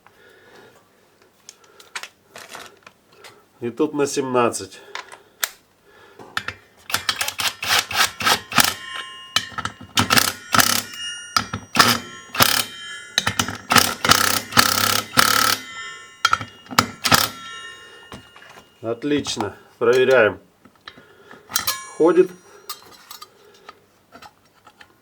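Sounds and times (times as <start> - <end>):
wrench clicking and rattling on metal: 6.4 - 18.6, 21.5 - 23.3.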